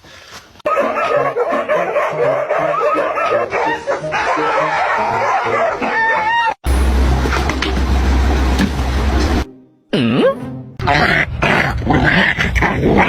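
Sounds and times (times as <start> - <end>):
music: 1.1 - 10.8.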